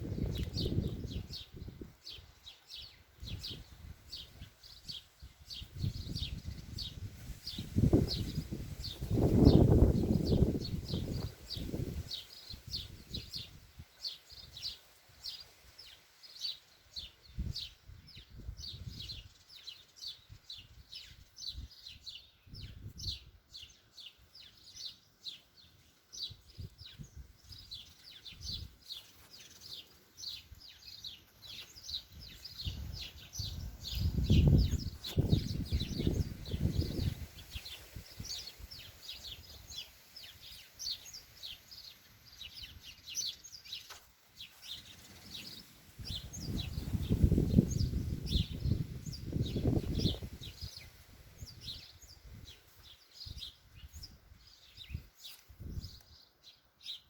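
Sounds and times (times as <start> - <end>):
wind rumbling on microphone: 0.0 - 15.4, 17.2 - 23.7, 26.2 - 29.1, 31.8 - 41.0, 44.6 - 56.2
small bird chirping: 0.0 - 57.0.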